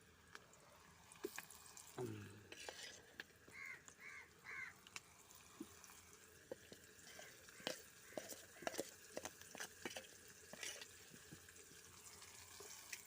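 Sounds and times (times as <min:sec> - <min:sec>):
crow cawing: 0:03.5 - 0:04.8.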